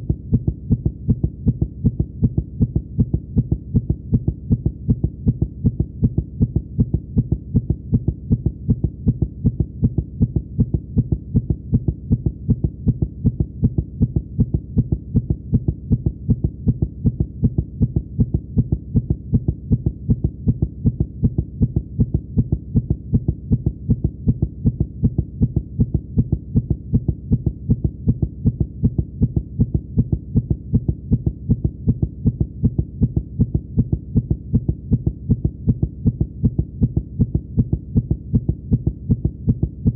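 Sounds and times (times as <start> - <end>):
fast heartbeat thumps: 0.0 - 39.9.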